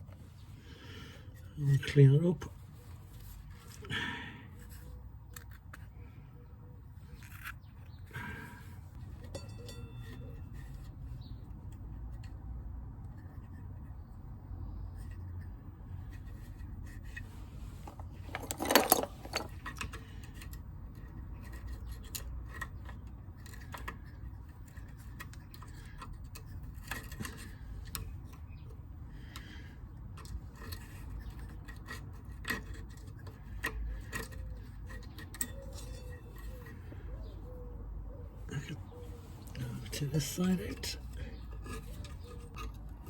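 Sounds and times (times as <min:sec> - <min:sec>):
metallic clatter: 0:17.8 - 0:20.0
light scraping on metal: 0:39.0 - 0:43.0.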